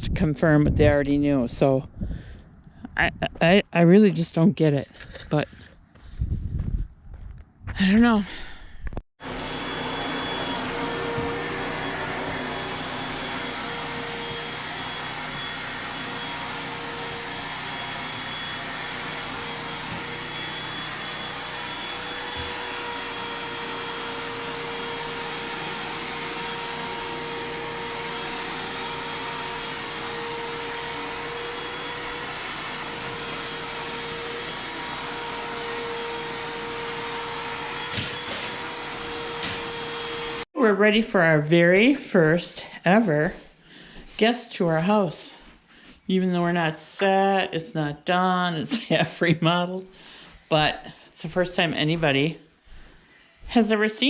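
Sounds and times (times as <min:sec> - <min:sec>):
vacuum cleaner running: 0:09.2 - 0:40.5, 0:43.1 - 0:54.0.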